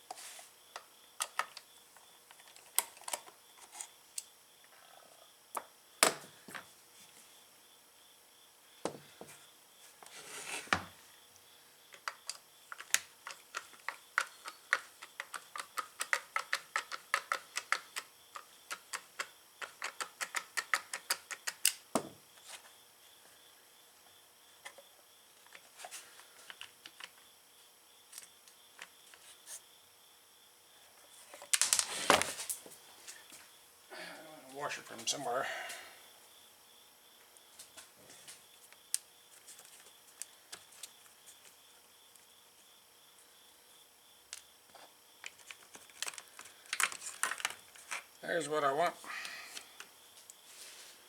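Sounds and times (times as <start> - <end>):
hand tools clicking and tapping: 11.9 - 21.8.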